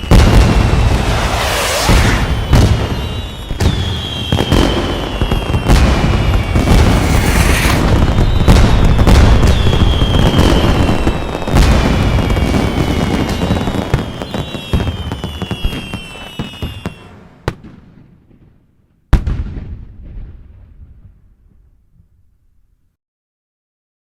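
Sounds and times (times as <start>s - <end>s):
high thin whistle: 0.0s - 11.2s
fireworks bursts and booms: 0.0s - 22.2s
low rumble and crackle: 6.4s - 10.1s.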